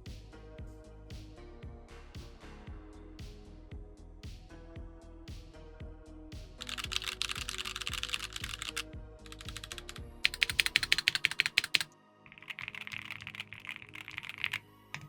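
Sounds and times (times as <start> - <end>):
background music: 0.0 - 15.0
mechanical keyboard key clacks: 6.6 - 15.0.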